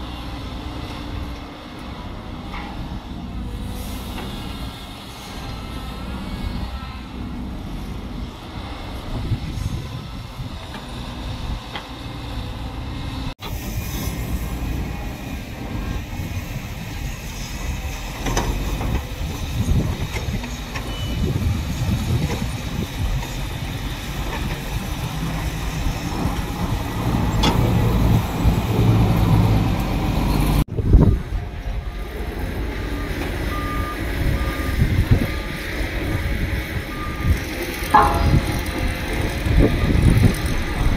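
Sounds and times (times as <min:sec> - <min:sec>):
diesel machinery engine rumble: 0:00.0 - 0:40.9
reversing alarm beeping: 0:32.9 - 0:35.7, 0:36.8 - 0:40.9.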